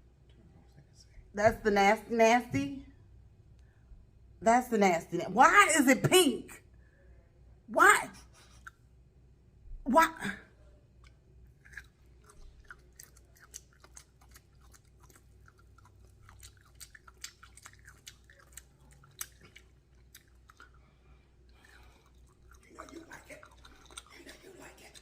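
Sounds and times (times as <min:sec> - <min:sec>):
wet mouth clicks and smacks: 0:11.0 - 0:20.8
chewing soft meat: 0:11.0 - 0:25.0.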